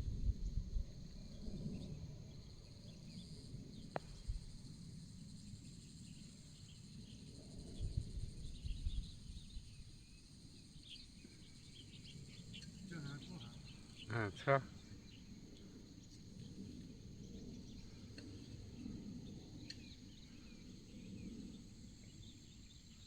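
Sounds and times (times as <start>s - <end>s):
wind gusts on microphone: 0.0s - 4.8s, 7.3s - 10.2s
insects trilling: 0.9s - 23.0s.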